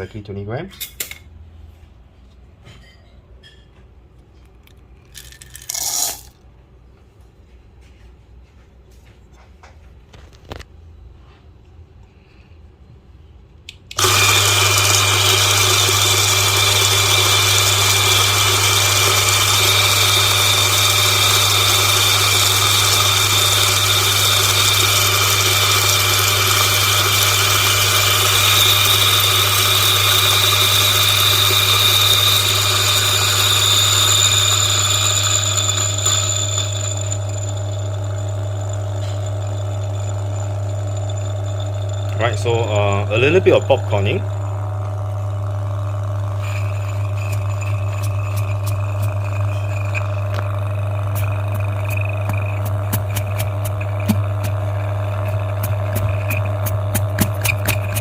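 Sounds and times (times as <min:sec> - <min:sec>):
coffee grinder grinding beans: 0:04.6 - 0:06.5, 0:13.9 - 0:58.0.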